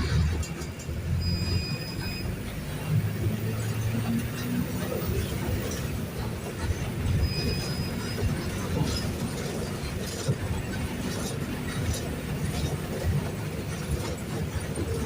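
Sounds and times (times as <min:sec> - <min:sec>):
bus body and fittings rattling: 0:00.0 - 0:15.0
bus diesel engine running: 0:00.0 - 0:15.0
short high squeak: 0:07.2 - 0:08.4.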